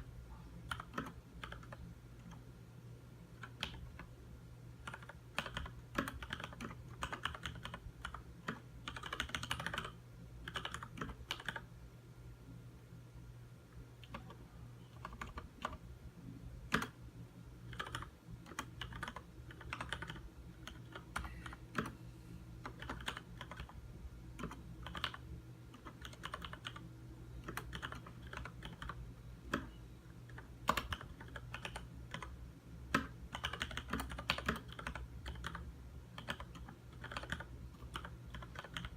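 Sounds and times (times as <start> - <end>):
typing on mechanical keyboard: 0.7 - 2.4, 3.4 - 4.1, 4.8 - 11.7, 14.0 - 15.8, 16.7 - 17.0, 17.7 - 22.0, 22.6 - 23.8, 24.4 - 29.7, 30.3 - 32.3, 32.9 - 35.6, 36.2 - 38.9.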